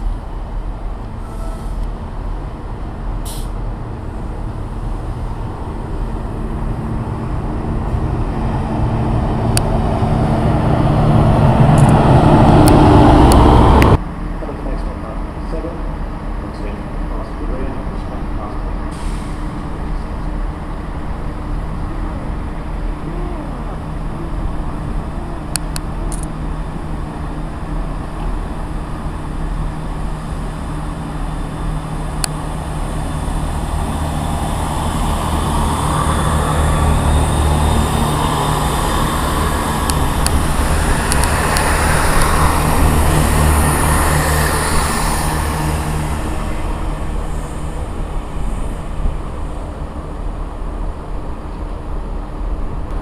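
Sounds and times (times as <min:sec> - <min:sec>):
train rumbling through station: 0:00.0 - 0:53.0
train hiss: 0:01.2 - 0:01.9, 0:03.2 - 0:03.6, 0:18.9 - 0:19.6.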